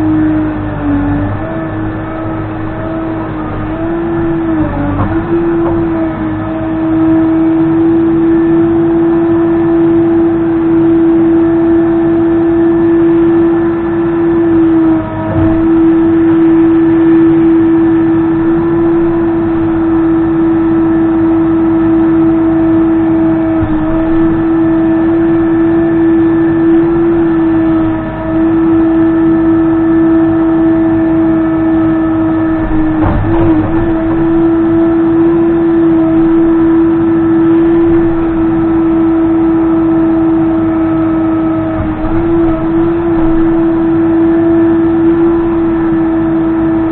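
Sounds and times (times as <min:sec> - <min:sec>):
diesel engine running at high revs: 0:00.0 - 0:46.9
low thud: 0:15.3 - 0:15.9, 0:32.5 - 0:34.7.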